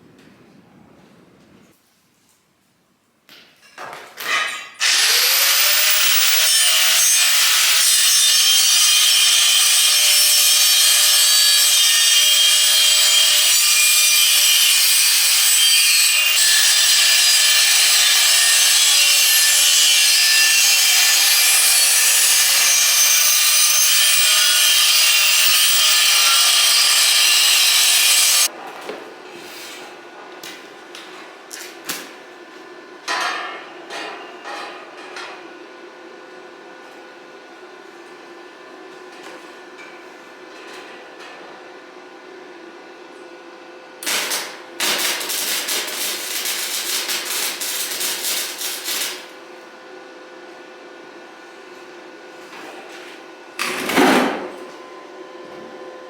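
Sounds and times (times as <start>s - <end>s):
angle grinder grinding steel: 4.8s - 28.5s, 44.0s - 49.3s.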